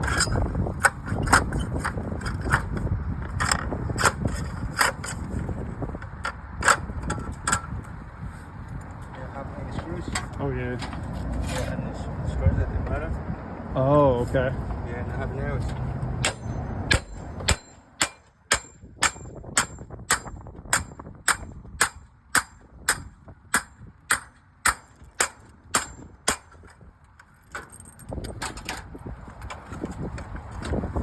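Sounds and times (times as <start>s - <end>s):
hammer striking metal: 16.2s - 26.6s.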